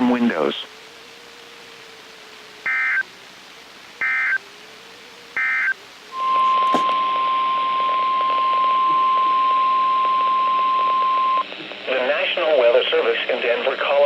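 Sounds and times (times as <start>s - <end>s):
radio hiss: 0.0s - 14.0s
steady alarm tone: 2.6s - 3.1s, 4.0s - 4.4s, 5.4s - 11.4s
digital data tone bursts: 2.7s - 3.1s, 4.0s - 4.4s, 5.4s - 11.5s.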